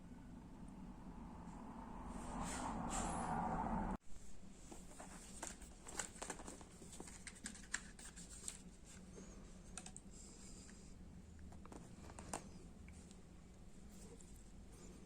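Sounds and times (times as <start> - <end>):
steady rushing noise: 0.2 - 4.0
plastic parts clicking and tapping: 5.3 - 8.6, 9.7 - 10.0.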